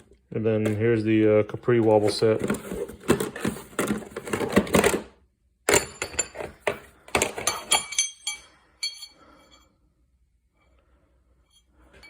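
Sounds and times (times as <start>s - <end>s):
metal extension bars clinking: 7.3s - 9.6s.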